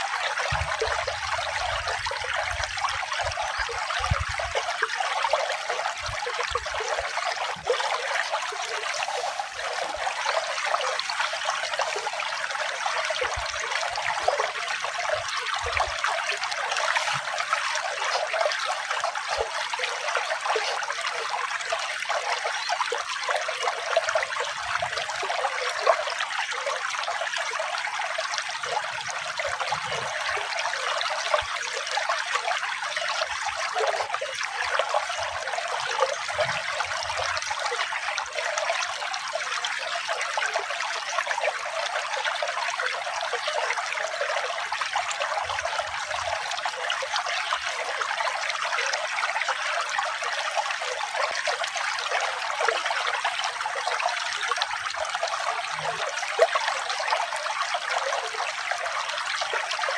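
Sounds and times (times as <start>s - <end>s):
running water rushing: 0.0s - 38.6s, 50.8s - 59.9s.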